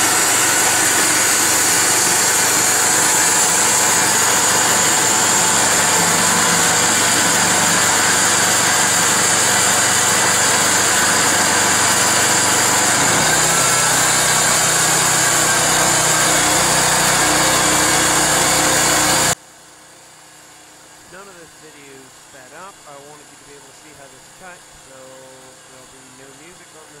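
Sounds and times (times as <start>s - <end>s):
bandsaw mill engine cutting log: 0.0s - 19.4s, 21.2s - 27.0s.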